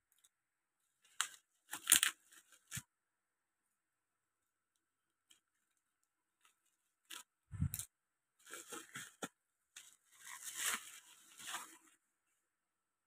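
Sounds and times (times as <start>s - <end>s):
packaging rustling and tearing: 8.4s - 11.9s.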